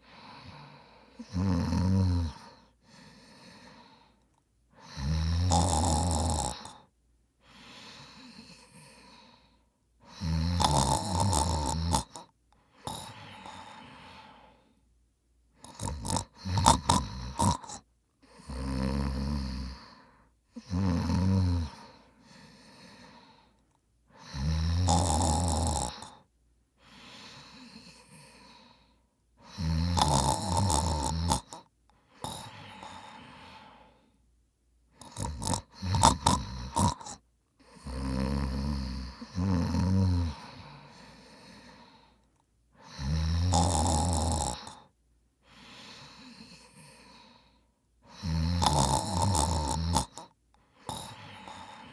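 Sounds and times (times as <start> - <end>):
soft breathing: 0.0 - 1.3, 2.3 - 5.0, 6.6 - 10.2, 12.1 - 15.0, 21.6 - 24.4, 26.0 - 29.6, 31.4 - 39.4, 40.2 - 43.1, 44.6 - 48.3, 49.2 - 51.9
man snoring: 0.2 - 4.0, 4.8 - 6.9, 10.0 - 14.5, 15.6 - 20.0, 20.6 - 23.4, 24.1 - 28.8, 29.4 - 34.0, 35.0 - 42.2, 42.8 - 44.9, 45.5 - 47.5, 48.1 - 51.9.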